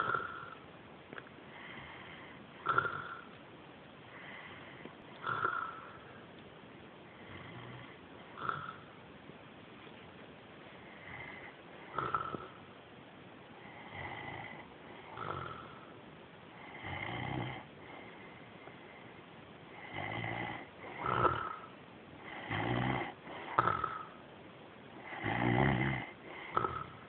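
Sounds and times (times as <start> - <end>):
man snoring: 0.0 - 0.6, 1.7 - 3.3, 5.2 - 5.9, 7.2 - 8.8, 11.0 - 12.6, 13.7 - 15.9, 16.6 - 17.7, 19.8 - 21.7, 22.3 - 24.2, 25.0 - 27.0.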